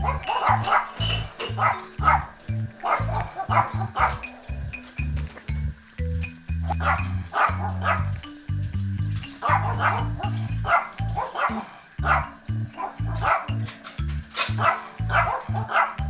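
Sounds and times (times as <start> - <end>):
small dog barking: 0.0 - 4.3, 6.8 - 8.1, 9.4 - 13.6, 14.6 - 16.0
background music with bass: 0.0 - 16.0.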